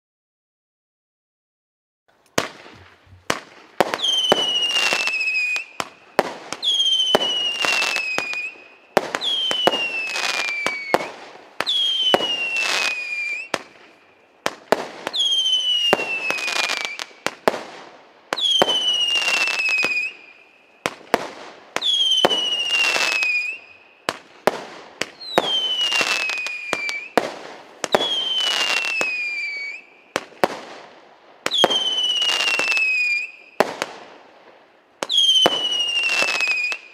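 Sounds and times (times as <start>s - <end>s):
firework launch pops and bangs: 2.2s - 15.3s, 15.9s - 20.2s, 20.8s - 23.5s, 24.1s - 29.2s, 33.6s - 34.2s, 35.0s - 36.8s
firework falling whistle: 2.4s - 13.8s, 15.1s - 17.4s, 18.4s - 21.0s, 21.8s - 24.1s, 25.0s - 27.3s, 27.9s - 30.3s, 31.5s - 33.6s, 35.0s - 36.9s.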